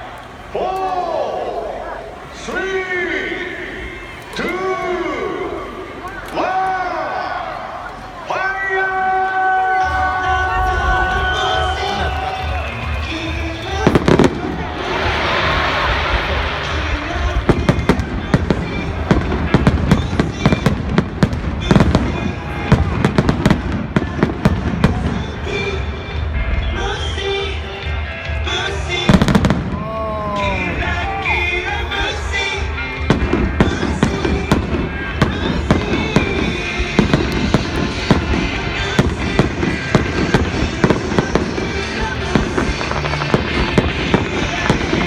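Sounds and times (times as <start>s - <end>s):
music playing: 9.2s - 45.0s
fireworks bangs and crackles: 9.8s - 31.0s, 31.9s - 45.0s.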